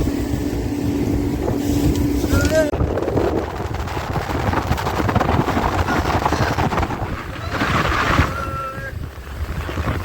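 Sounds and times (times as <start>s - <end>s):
motorboat low rumble: 0.0s - 10.0s
water rushing past: 0.0s - 10.0s
wind buffeting microphone: 0.0s - 10.0s.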